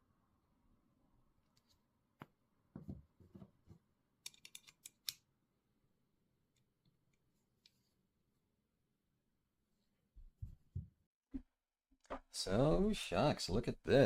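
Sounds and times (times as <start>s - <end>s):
sharp metal clicks and snips: 4.2s - 5.2s.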